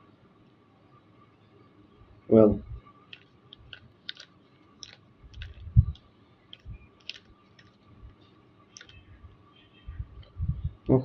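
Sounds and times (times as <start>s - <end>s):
plastic cube clicks: 3.1s - 7.8s, 8.8s - 9.0s.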